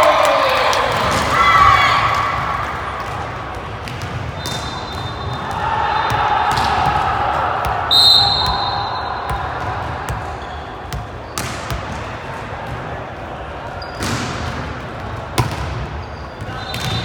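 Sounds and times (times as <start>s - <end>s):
referee's whistle blast: 7.9s - 9.3s.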